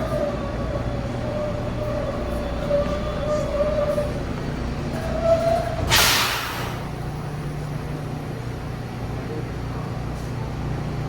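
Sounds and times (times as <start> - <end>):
low hum of standing train: 0.0 - 11.0
train brakes air hiss: 5.8 - 7.0.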